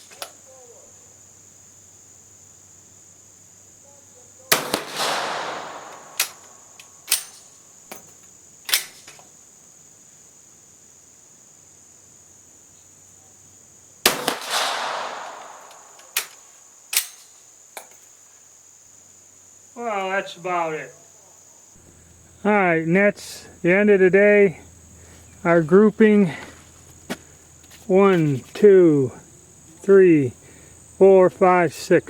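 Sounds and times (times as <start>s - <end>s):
insects droning: 0.0s - 32.0s
rifle shots echoing: 4.5s - 7.5s, 14.0s - 16.4s.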